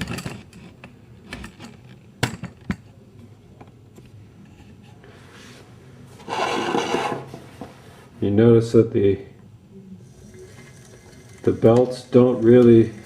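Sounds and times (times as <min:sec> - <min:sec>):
pottery wheel humming: 0:04.2 - 0:08.0, 0:09.0 - 0:13.0.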